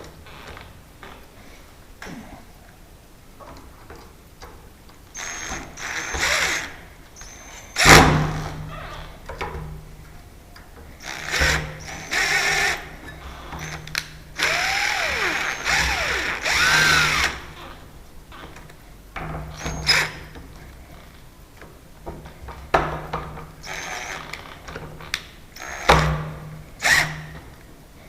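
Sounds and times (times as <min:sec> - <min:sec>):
power drill running: 0:05.2 - 0:06.8, 0:11.0 - 0:12.9, 0:13.6 - 0:17.6, 0:23.6 - 0:24.4, 0:25.6 - 0:26.2, 0:26.8 - 0:27.3.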